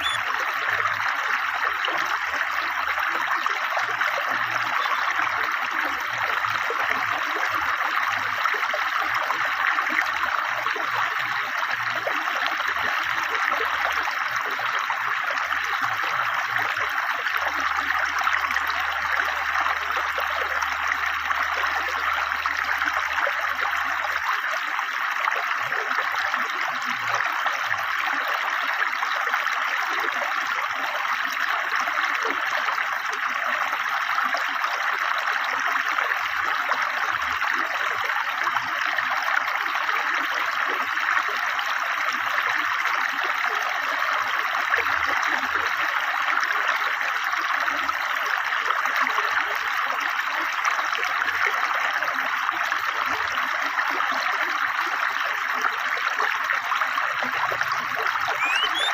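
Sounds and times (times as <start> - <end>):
river water flowing: 0.0 - 16.0, 56.3 - 58.9.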